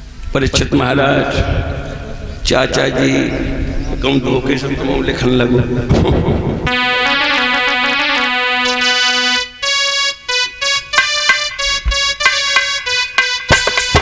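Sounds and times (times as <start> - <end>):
instrumental music: 6.7 - 14.0
sharp percussion hits: 6.7 - 14.0.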